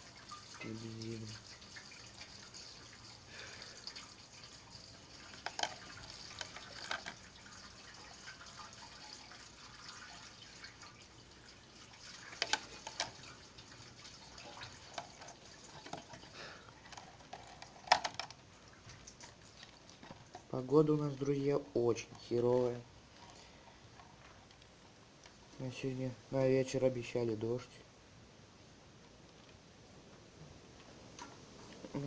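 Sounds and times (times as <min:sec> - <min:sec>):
faint liquid trickling: 0:00.0 - 0:28.3
clicks and knocks: 0:16.9 - 0:18.4.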